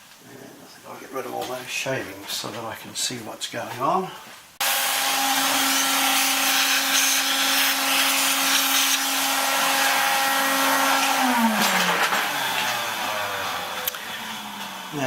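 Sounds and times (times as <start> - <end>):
shop vacuum motor whine: 4.6 - 15.0.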